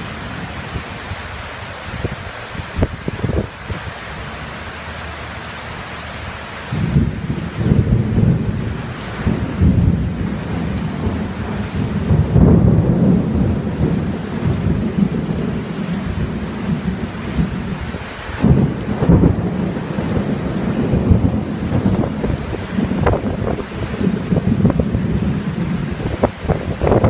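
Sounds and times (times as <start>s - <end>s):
heavy rain pouring: 0.0s - 27.0s
thunder rumbling: 6.7s - 27.0s.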